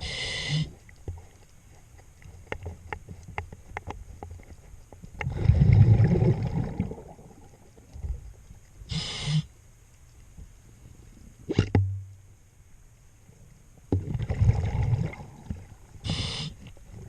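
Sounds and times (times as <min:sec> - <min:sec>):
regulator hiss on inhale: 0:00.0 - 0:00.9, 0:08.9 - 0:09.6, 0:16.0 - 0:16.8
low hum: 0:00.6 - 0:17.0
diver exhaling bubbles underwater: 0:05.2 - 0:07.6, 0:14.0 - 0:16.2.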